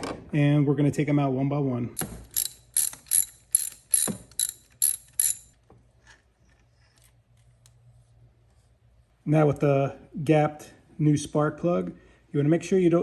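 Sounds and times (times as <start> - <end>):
hand ratchet clicking: 2.0 - 5.6.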